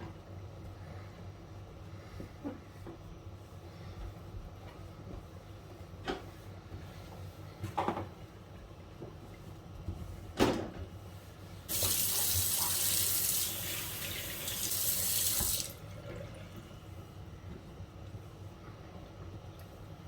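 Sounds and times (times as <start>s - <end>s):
tap running water into sink: 11.7s - 16.6s.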